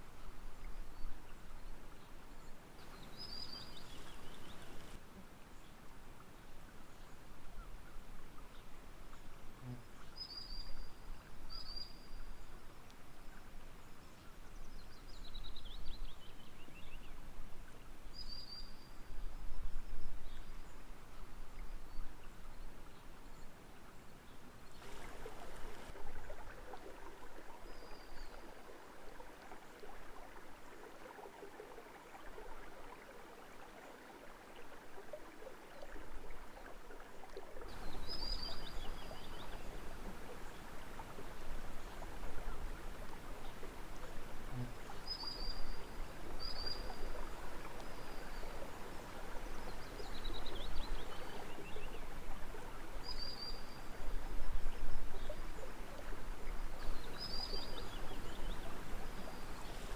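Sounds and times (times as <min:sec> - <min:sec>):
water trickling: 0:00.5 - 0:07.4, 0:24.6 - 0:59.9.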